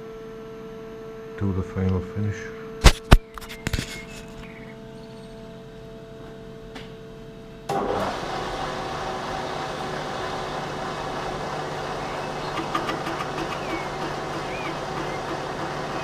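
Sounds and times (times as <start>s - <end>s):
machine tool hum: 7.7s - 16.0s
machine tool cutting metal: 11.1s - 16.0s.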